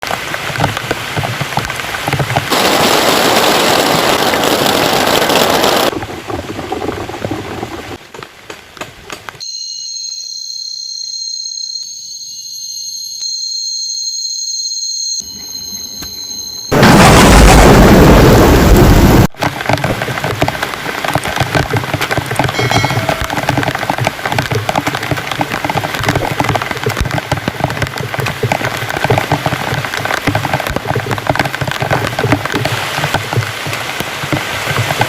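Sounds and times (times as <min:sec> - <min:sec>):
heavy rain pouring: 0:00.0 - 0:08.2, 0:16.7 - 0:35.0
high-pitched held tones: 0:09.4 - 0:16.8, 0:22.6 - 0:23.6.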